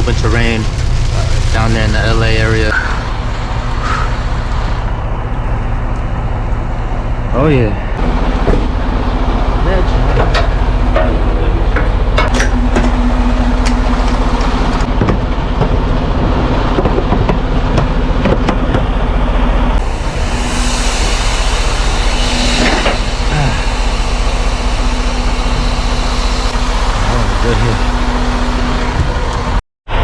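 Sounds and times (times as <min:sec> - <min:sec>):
loud rain: 0:00.0 - 0:04.7, 0:23.0 - 0:30.0
road noise: 0:00.0 - 0:30.0
truck engine drone: 0:00.0 - 0:30.0.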